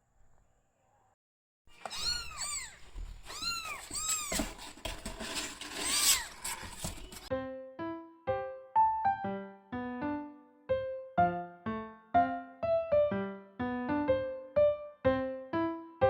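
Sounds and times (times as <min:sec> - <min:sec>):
piano music: 0:07.0 - 0:16.0.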